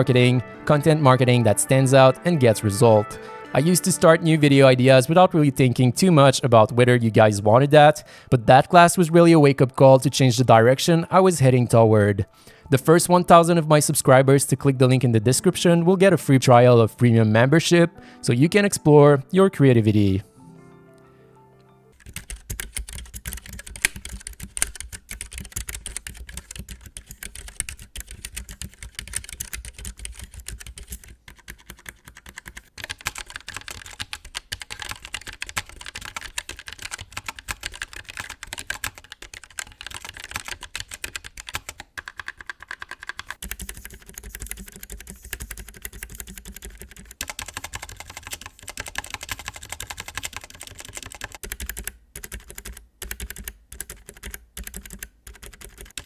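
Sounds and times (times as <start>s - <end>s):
keyboard typing: 22.0s - 56.0s.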